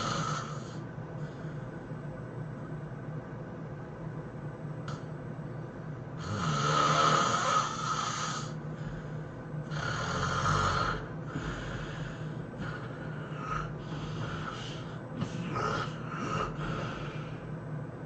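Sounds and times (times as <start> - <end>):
man snoring loudly: 0.0 - 0.8, 6.2 - 8.6, 9.7 - 17.3.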